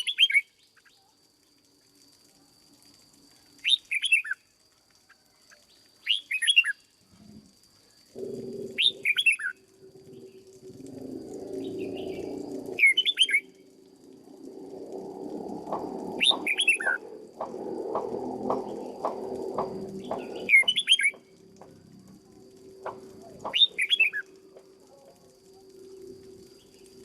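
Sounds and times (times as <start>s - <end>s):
bird singing whistled phrases: 0.0s - 1.1s, 3.6s - 4.4s, 6.0s - 6.8s, 8.8s - 9.6s, 12.8s - 13.5s, 16.2s - 17.0s, 20.0s - 21.2s, 22.9s - 24.3s
low rumble: 8.1s - 27.0s.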